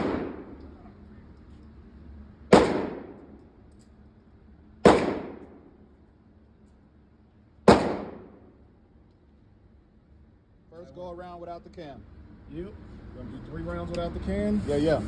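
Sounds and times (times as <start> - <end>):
gunshots echoing indoors: 0.0 - 0.8, 2.5 - 3.4, 4.8 - 5.9, 7.7 - 8.6.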